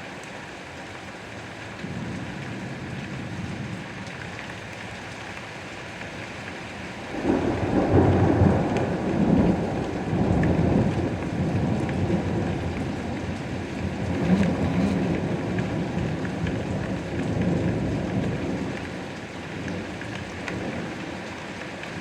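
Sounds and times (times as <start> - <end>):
steady rain: 0.0 - 22.0
thunder rumble: 7.1 - 19.0.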